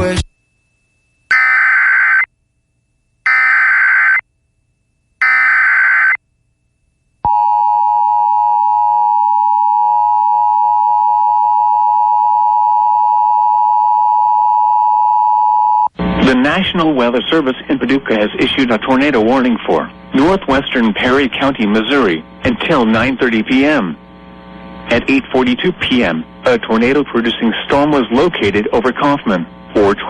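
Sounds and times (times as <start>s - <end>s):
steady warning alarm tone: 0.5s - 2.3s, 3.3s - 4.2s, 5.2s - 6.2s.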